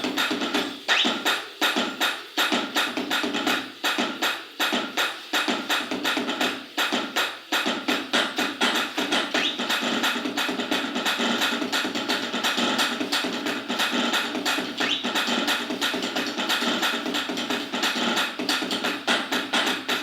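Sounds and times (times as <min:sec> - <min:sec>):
electronic percussion hits: 0:07.6 - 0:20.0.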